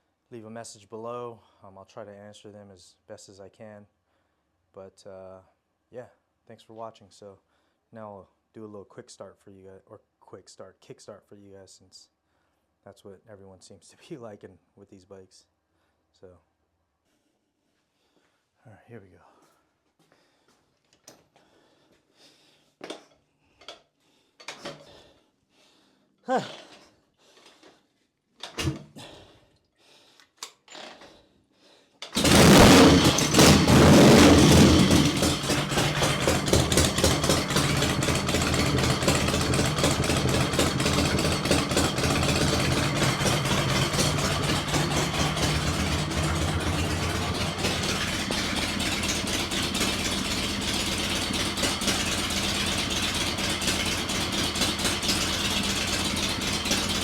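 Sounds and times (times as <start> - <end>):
motorcycle engine starting and idling: 28.4 - 28.9, 32.0 - 57.0.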